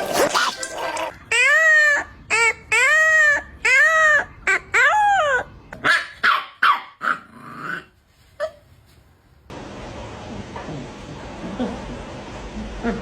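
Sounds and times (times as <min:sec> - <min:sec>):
puppy yelping: 0:00.2 - 0:07.8
puppy howling and whining: 0:01.2 - 0:05.5.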